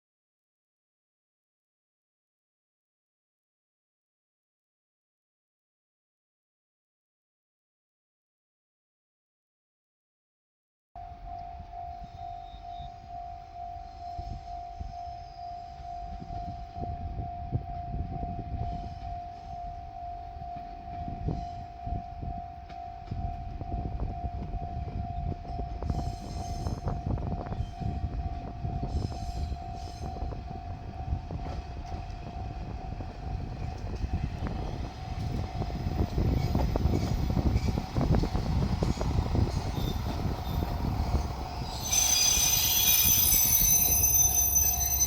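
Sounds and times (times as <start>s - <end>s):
diesel railcar rumbling and clanking: 11.0s - 45.0s
level crossing bell ringing: 41.9s - 45.0s.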